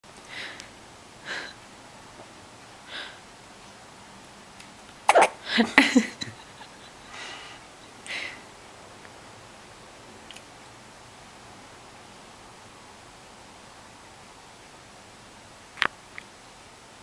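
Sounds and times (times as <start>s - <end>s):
baby hiccupping: 5.1s - 5.6s.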